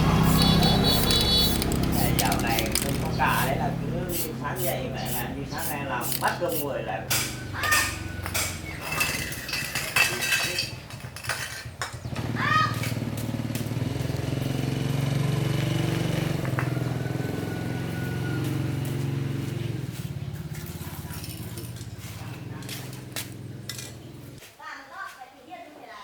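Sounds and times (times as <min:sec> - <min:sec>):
engine running steadily: 0:00.0 - 0:08.6
clattering and clicks: 0:01.5 - 0:03.2.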